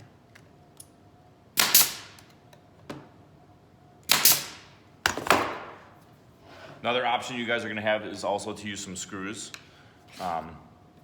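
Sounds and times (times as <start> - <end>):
hammer driving nails into wood: 1.6 - 2.2, 4.1 - 5.7.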